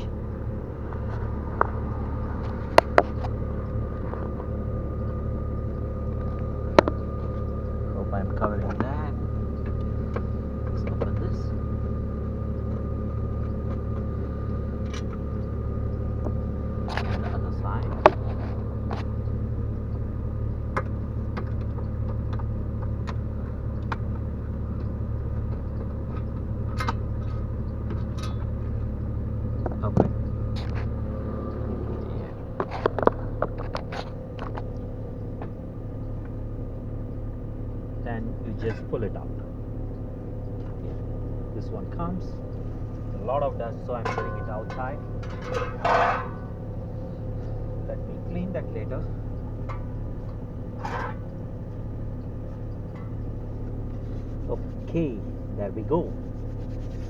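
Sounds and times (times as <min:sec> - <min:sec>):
low engine-like drone: 0:00.0 - 0:57.0
steady low hum: 0:00.0 - 0:57.0.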